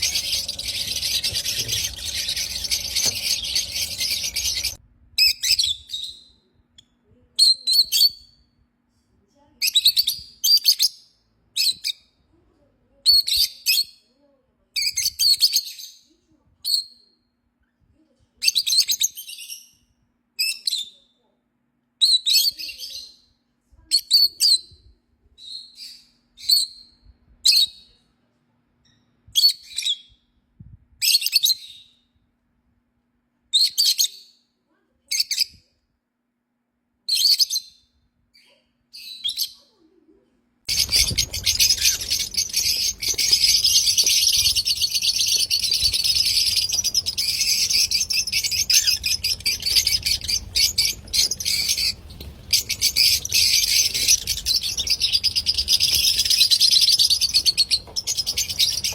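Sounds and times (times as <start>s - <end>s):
lovebirds chirping: 0.0s - 4.8s, 40.7s - 58.9s.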